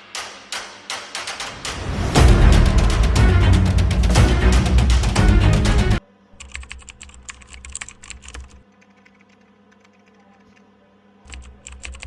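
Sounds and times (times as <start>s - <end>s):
sharp keyboard key clicks: 6.4s - 10.6s, 11.3s - 12.0s.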